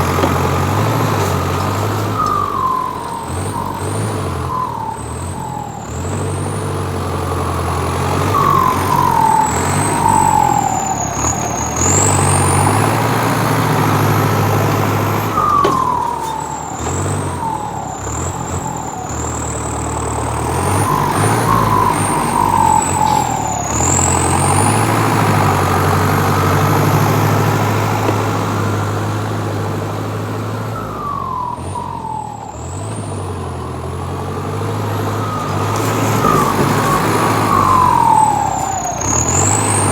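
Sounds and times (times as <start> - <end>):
vehicle engine running: 0.0 - 39.9.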